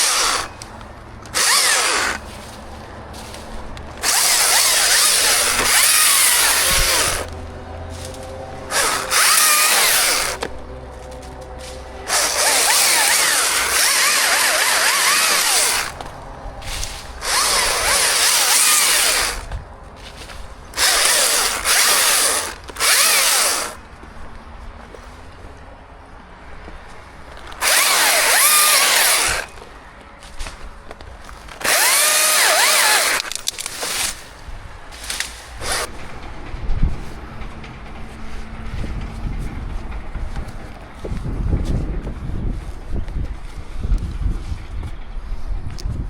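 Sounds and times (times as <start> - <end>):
chainsaw cutting wood: 0.0 - 2.6, 3.2 - 10.6, 11.6 - 19.6, 20.8 - 23.8, 27.4 - 29.6, 31.4 - 34.3, 35.0 - 36.0.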